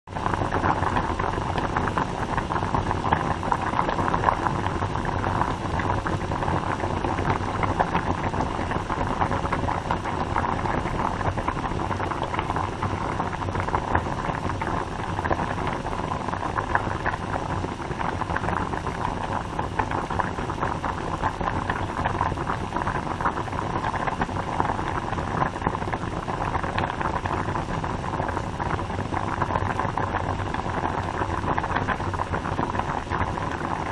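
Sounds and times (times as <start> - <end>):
water boiling in a pot: 0.0 - 33.9.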